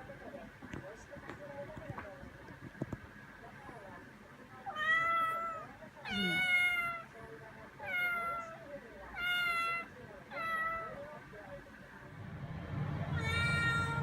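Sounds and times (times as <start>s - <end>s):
young cat meowing: 4.7s - 7.1s, 13.2s - 14.0s.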